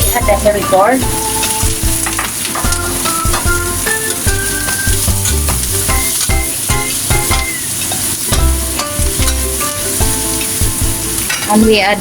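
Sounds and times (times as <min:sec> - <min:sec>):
background music with bass line: 0:00.0 - 0:07.5, 0:08.3 - 0:11.9
gourd sizzling in hot oil: 0:00.0 - 0:12.0.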